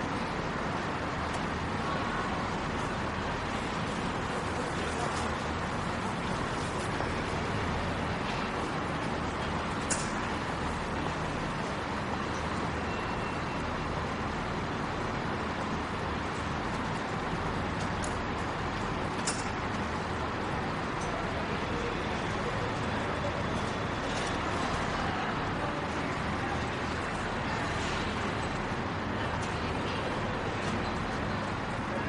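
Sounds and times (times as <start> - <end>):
crowd murmur: 20.1 - 32.0.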